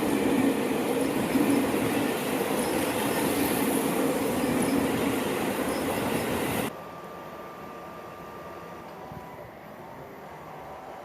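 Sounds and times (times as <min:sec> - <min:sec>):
train wheels rumbling on rails: 0:00.0 - 0:06.7.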